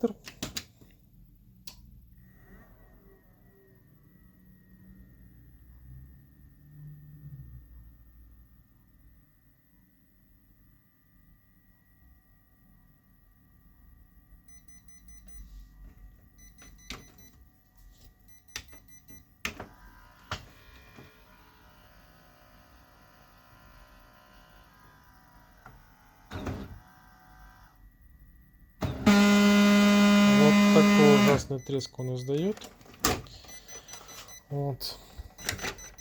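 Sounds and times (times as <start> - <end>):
printer motors whining: 19.4 - 27.8, 28.8 - 31.6.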